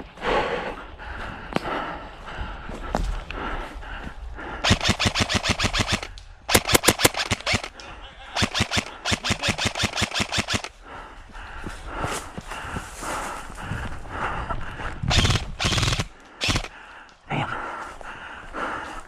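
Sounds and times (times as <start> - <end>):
airsoft rifle bursts: 4.6 - 10.8, 15.1 - 16.8.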